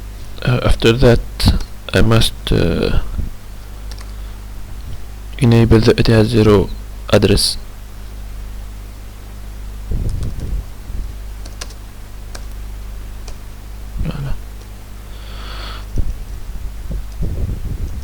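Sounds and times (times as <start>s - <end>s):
low electrical hum: 0.0s - 18.0s
computer keyboard keystrokes: 3.9s - 4.2s, 11.4s - 12.6s, 13.2s - 13.4s.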